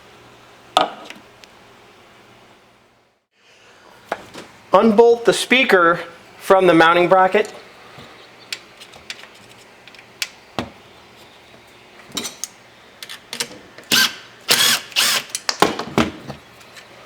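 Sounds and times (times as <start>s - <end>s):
loud bursts of power tool: 13.9s - 15.3s.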